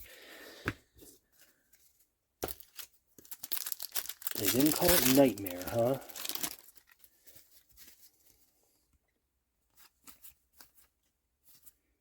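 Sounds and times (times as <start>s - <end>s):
trading cards clicking and rustling: 2.4s - 6.8s.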